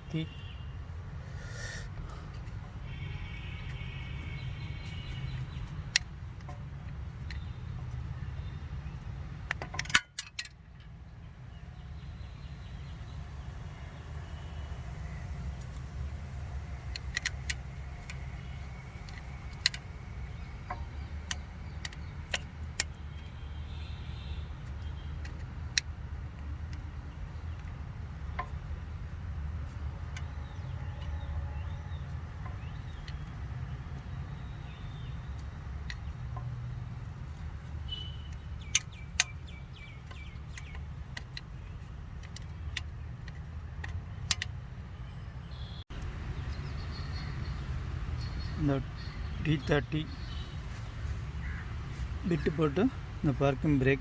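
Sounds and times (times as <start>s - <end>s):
metallic clicks of hand tools: 9.5s - 10.9s.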